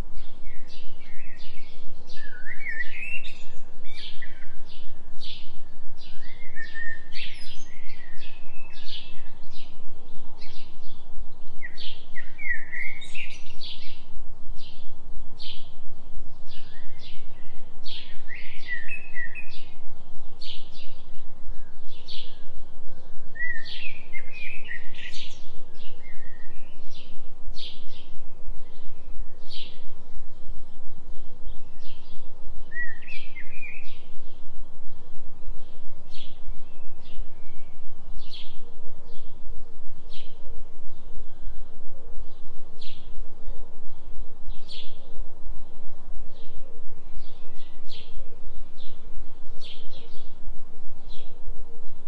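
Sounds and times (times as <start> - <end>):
songbirds chirping: 0.0 - 52.0
steady low tone: 0.0 - 52.0.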